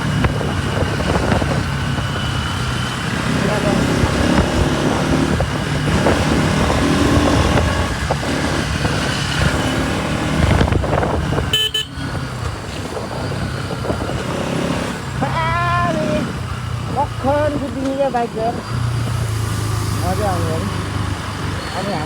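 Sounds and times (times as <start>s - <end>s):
motorcycle engine running: 0.0s - 22.0s
wind and road noise: 0.0s - 22.0s
vehicle horn honking: 11.5s - 12.2s.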